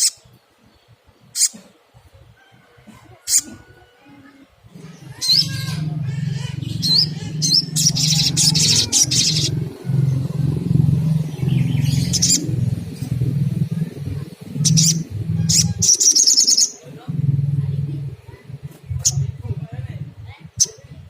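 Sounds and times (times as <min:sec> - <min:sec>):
bird chirping and trilling: 0:03.3 - 0:03.6, 0:04.7 - 0:21.0
steady low hum: 0:04.5 - 0:21.0.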